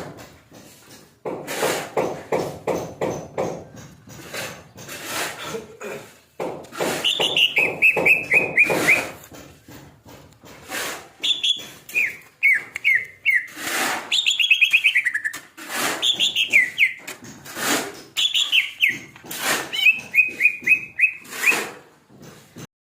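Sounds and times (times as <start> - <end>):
sharp knocks and rustles: 0.0 - 22.7
bird rapid repeated notes: 7.0 - 9.1, 11.2 - 15.4, 16.0 - 17.0, 18.2 - 19.1, 19.7 - 21.6.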